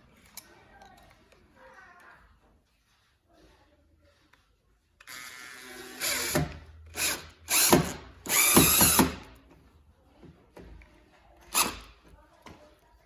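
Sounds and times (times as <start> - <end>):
power drill driving screws: 5.0 - 9.4, 11.5 - 12.0.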